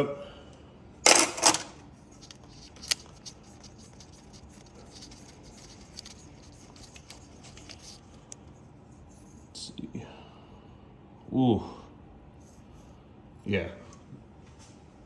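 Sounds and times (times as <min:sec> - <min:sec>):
hand tools clicking and scratching: 0:01.2 - 0:09.4.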